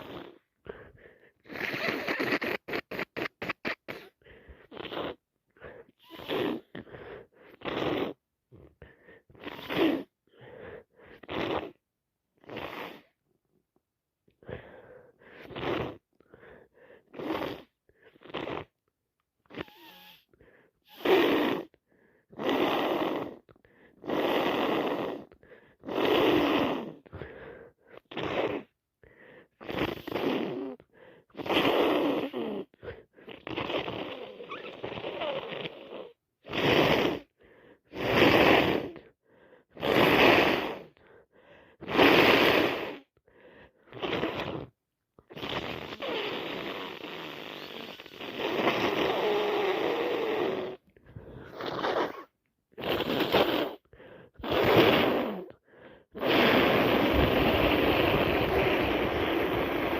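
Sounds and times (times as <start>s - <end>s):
woman making wet nose sounds: 0.0s - 0.8s, 1.4s - 5.2s, 6.0s - 8.7s, 11.2s - 11.8s, 15.4s - 16.0s, 17.2s - 18.8s, 19.4s - 20.3s, 27.9s - 28.7s, 29.6s - 37.3s, 43.9s - 55.6s, 56.2s - 59.9s.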